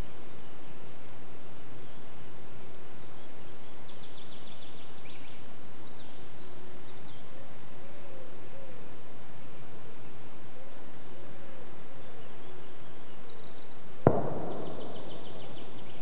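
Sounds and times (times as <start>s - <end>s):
faint low wavering calls: 3.0s - 16.0s
rapid bird trill: 14.1s - 16.0s.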